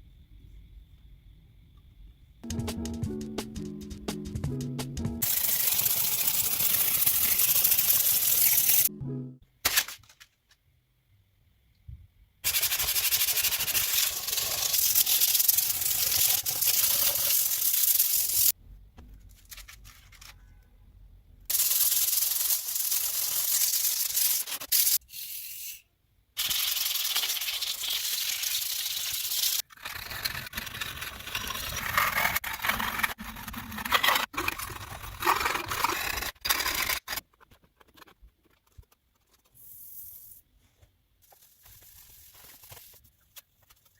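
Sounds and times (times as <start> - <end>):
sanding hiss on metal saw: 5.2 - 8.9.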